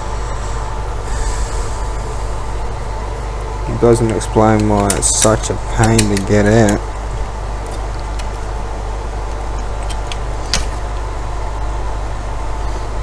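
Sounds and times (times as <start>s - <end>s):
low electrical hum: 0.0s - 13.0s
room noise: 0.0s - 13.0s
small plastic and metal parts clicking: 3.8s - 11.1s.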